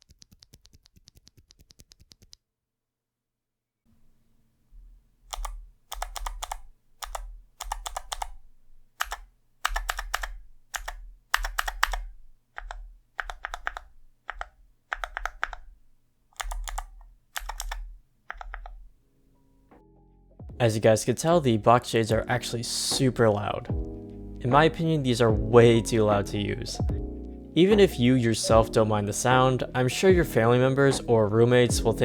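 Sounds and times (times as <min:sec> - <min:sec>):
mechanical keyboard clicky typing: 0:05.3 - 0:18.9.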